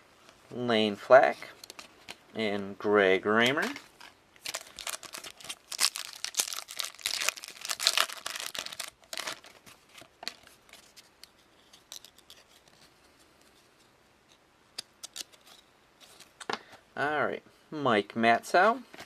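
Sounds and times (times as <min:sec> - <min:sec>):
wrapper tearing: 0:03.6 - 0:11.0, 0:11.6 - 0:12.7
cards clicking and rustling: 0:03.6 - 0:12.9, 0:14.8 - 0:16.6.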